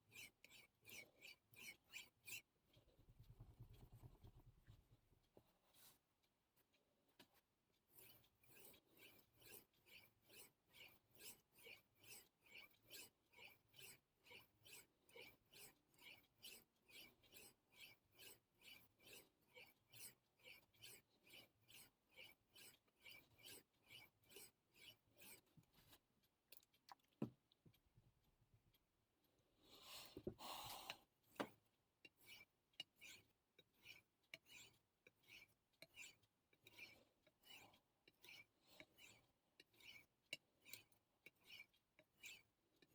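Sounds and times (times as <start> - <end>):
knife scraping on whetstone: 8.0 - 25.4, 30.8 - 42.5.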